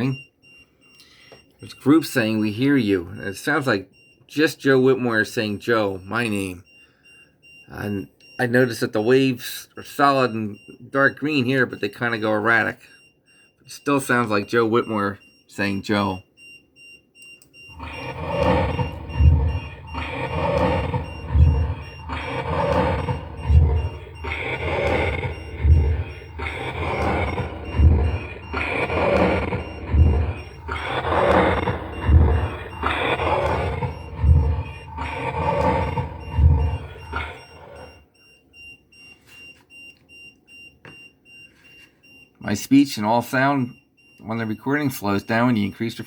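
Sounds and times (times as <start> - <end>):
faint high-pitched beeping: 0.0 - 46.0
low thump: 17.8 - 37.4.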